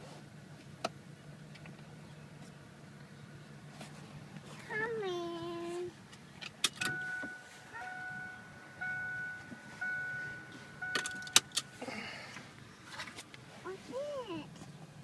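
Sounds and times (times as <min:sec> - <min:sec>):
car warning chime: 0:06.8 - 0:12.1.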